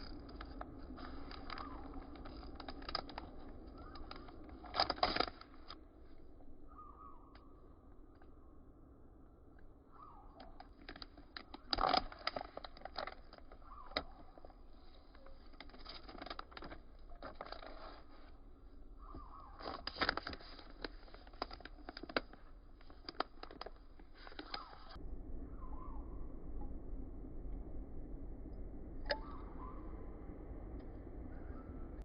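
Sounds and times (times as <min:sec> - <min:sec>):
packaging rustling: 0:00.0 - 0:06.5, 0:10.4 - 0:25.0.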